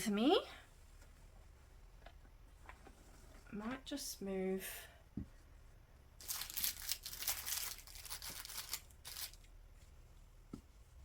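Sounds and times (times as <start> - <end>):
plastic packaging crinkling: 6.2 - 9.5.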